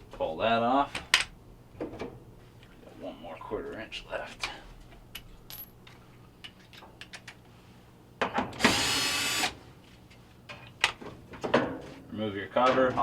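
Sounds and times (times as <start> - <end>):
power drill running: 8.6 - 9.6.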